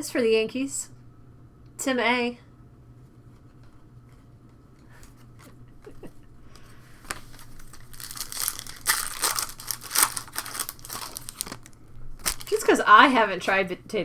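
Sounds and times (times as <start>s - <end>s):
faint low hum: 0.0s - 14.0s
card pack wrapper tearing and crinkling: 7.3s - 12.7s.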